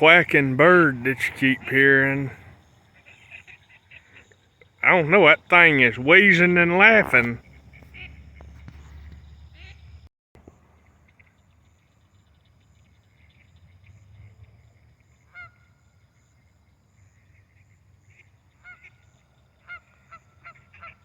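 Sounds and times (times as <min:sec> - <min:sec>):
duck quacking: 0:00.0 - 0:02.4, 0:04.8 - 0:08.6.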